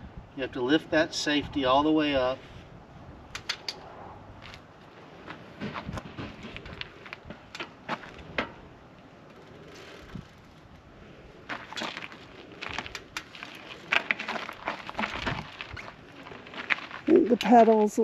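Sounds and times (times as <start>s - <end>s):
folding bike metal clicks and rattles: 3.3s - 3.8s, 5.6s - 10.7s, 11.5s - 17.8s.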